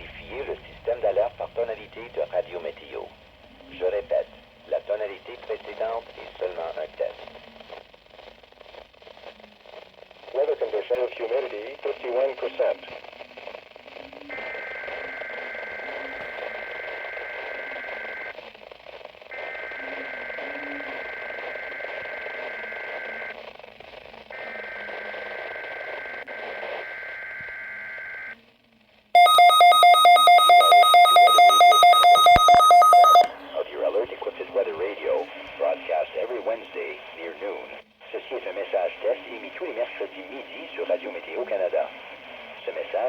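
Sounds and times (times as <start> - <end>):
radio hiss: 0.0 - 43.0
rapidly pulsing electronic alarm beep: 29.2 - 33.3.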